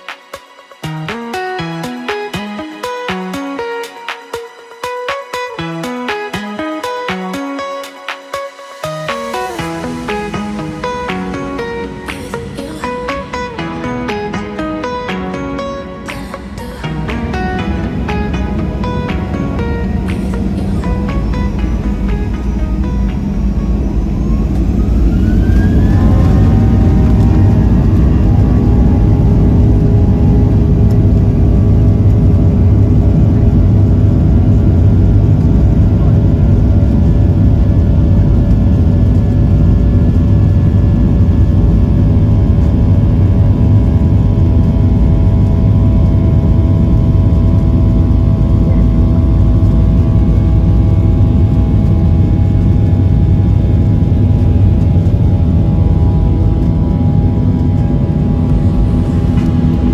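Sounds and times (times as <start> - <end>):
jet engines rumbling in cabin: 16.5 - 59.9.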